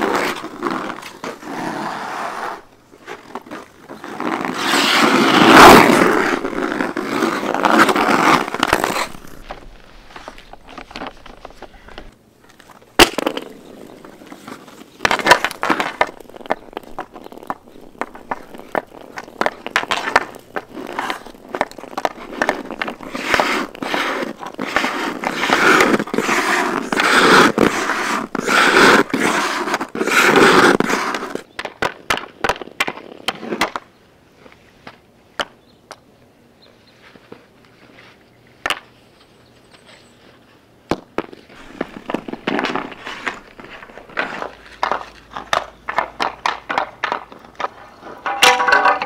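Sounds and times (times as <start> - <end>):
scraping over ice: 0.0 - 12.1, 13.1 - 31.4, 41.5 - 49.0.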